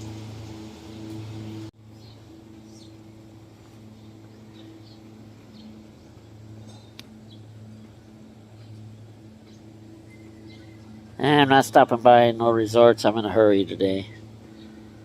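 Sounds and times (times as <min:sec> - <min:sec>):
vehicle engine drone: 0:00.0 - 0:15.0
faint high chirps: 0:00.7 - 0:12.5.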